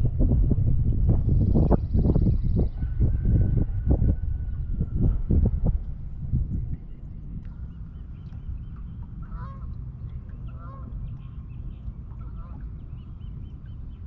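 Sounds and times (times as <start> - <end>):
wind rumble on microphone: 0.0 - 14.0
geese honking: 10.5 - 11.0.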